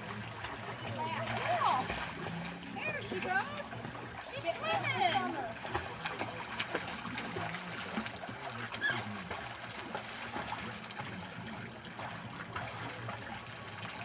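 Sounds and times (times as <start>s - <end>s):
pool water splashing: 0.0s - 14.0s.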